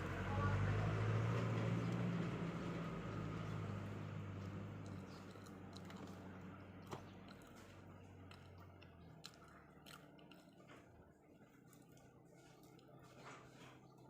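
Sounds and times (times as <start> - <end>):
passing vehicle engine hum: 0.0 - 11.2
eating clicks: 1.7 - 10.9.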